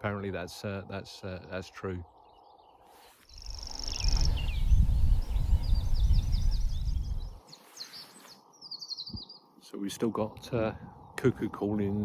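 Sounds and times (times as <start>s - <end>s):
songbird chirping: 0.9s - 12.0s
wind rumble on microphone: 3.4s - 7.4s.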